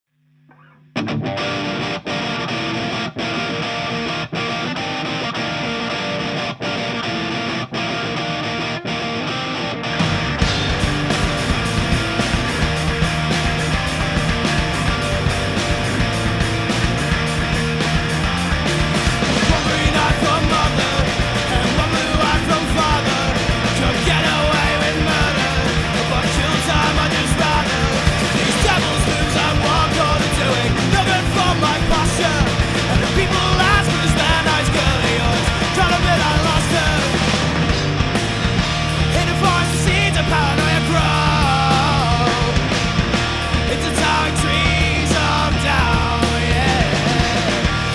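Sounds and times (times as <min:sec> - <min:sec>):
distorted electric guitars: 0:00.4 - 0:47.9
bass guitar: 0:00.8 - 0:47.9
driving drum beat: 0:10.0 - 0:47.9.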